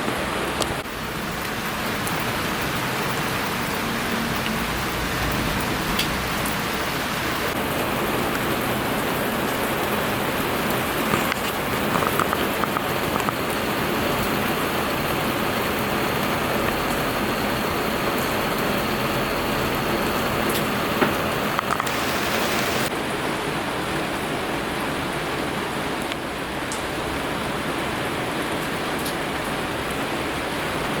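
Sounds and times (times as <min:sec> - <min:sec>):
rain on hard surfaces: 0:00.0 - 0:31.0
drips ticking: 0:00.8 - 0:22.9.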